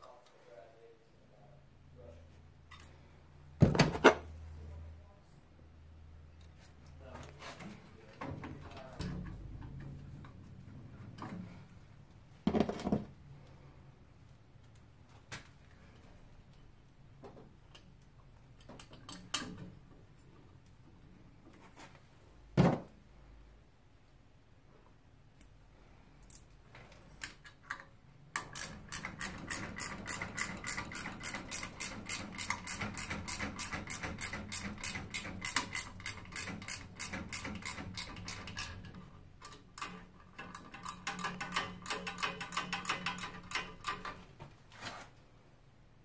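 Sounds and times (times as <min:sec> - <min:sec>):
rapid mechanical clicking: 0:28.4 - 0:44.2.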